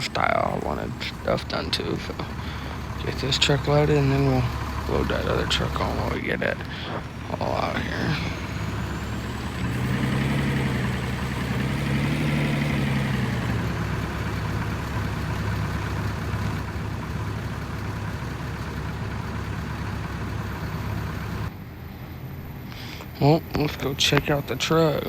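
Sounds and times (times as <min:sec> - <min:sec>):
truck engine revving and idling: 0:00.0 - 0:25.0.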